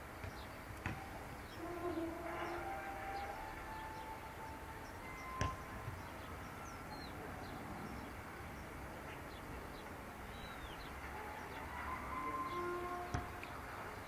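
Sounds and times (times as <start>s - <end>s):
small birds chirping: 5.2s - 11.1s.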